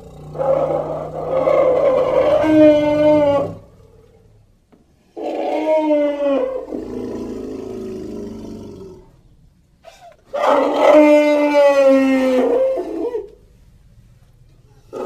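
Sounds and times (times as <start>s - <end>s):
elephant trumpeting: 0.0s - 4.3s, 5.2s - 7.2s, 9.8s - 13.3s.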